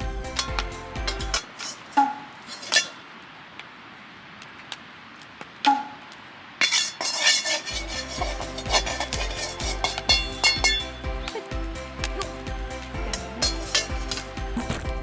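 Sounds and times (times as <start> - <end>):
background music with a beat: 0.0 - 1.4, 7.7 - 15.0
metal cookware clinking: 6.6 - 11.4, 13.1 - 14.2.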